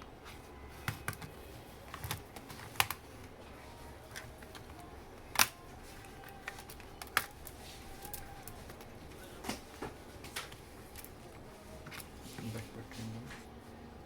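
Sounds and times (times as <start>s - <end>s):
plastic clicks and snaps: 4.1s - 5.6s.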